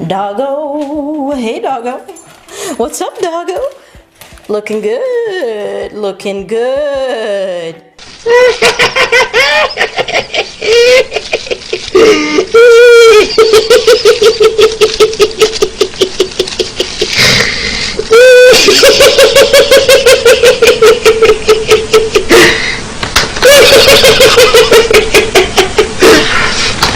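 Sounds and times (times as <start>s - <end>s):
person laughing loudly: 8.2s - 26.9s.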